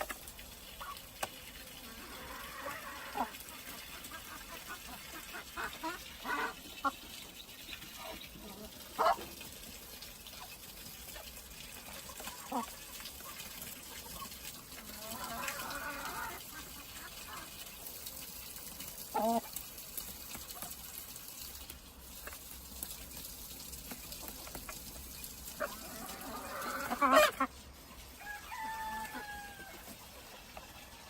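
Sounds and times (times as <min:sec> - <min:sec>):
chickens clucking: 0:00.0 - 0:09.5, 0:10.3 - 0:18.0, 0:19.0 - 0:19.6, 0:23.9 - 0:31.0
rooster crowing: 0:28.2 - 0:29.9.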